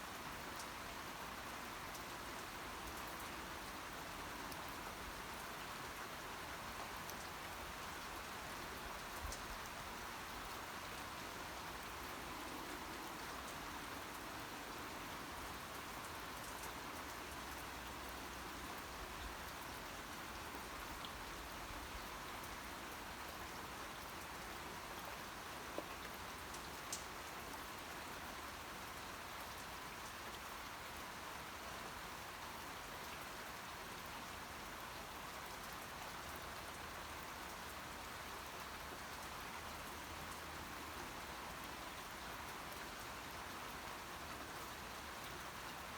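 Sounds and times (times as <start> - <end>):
steady rain patter: 0.0 - 45.9.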